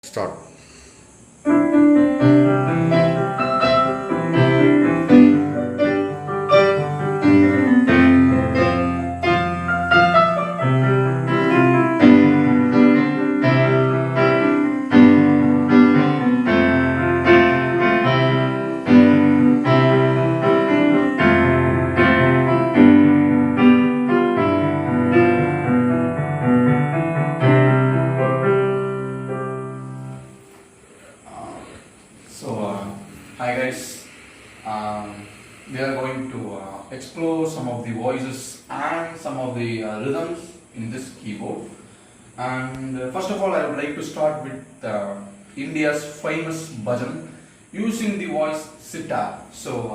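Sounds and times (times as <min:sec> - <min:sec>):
electronic keyboard piano piece: 0:01.4 - 0:30.9.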